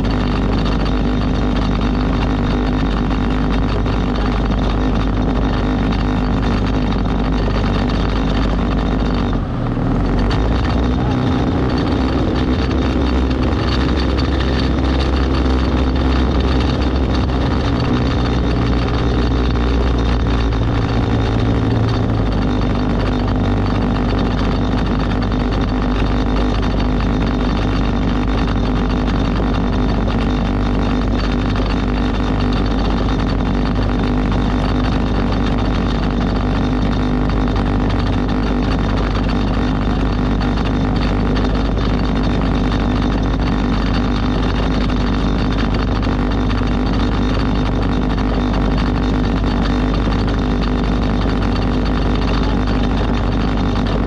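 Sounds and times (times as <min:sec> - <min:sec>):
motorboat engine running: 0:00.0 - 0:54.0
rush of noise: 0:06.1 - 0:27.2.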